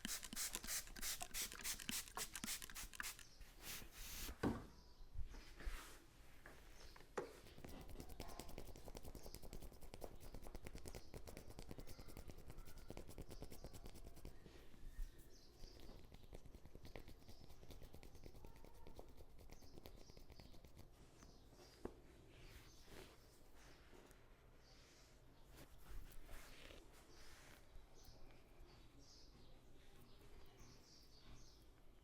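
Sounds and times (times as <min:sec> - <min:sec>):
fingers rubbing scalp and hair: 0:00.0 - 0:04.3, 0:07.3 - 0:14.5, 0:15.2 - 0:21.4.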